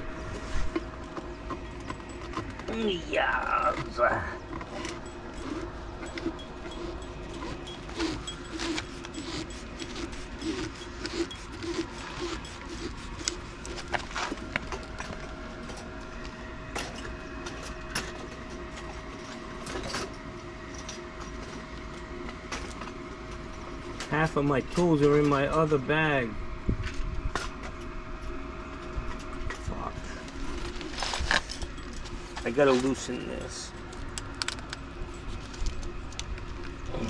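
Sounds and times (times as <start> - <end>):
steady hum: 0.0 - 37.0
hand tools clicking and knocking: 0.8 - 14.8.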